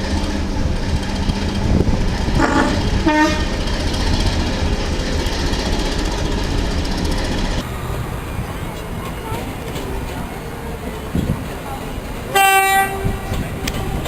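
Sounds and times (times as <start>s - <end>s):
train rumbling: 0.0s - 14.0s
locomotive horn toots: 2.4s - 3.6s, 7.7s - 14.0s.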